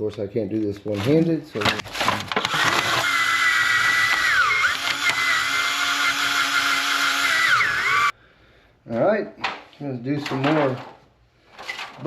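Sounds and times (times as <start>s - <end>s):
electric drill whining: 2.3s - 8.1s.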